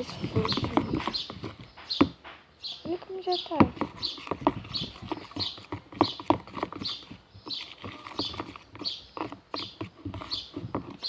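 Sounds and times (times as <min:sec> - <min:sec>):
soft squelching: 0:00.0 - 0:02.0.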